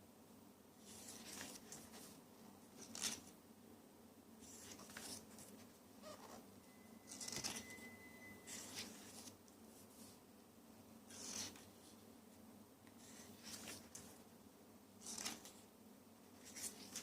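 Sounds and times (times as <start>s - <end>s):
faint thin steady tone: 6.2s - 10.2s
paper packaging rustling: 7.0s - 7.9s.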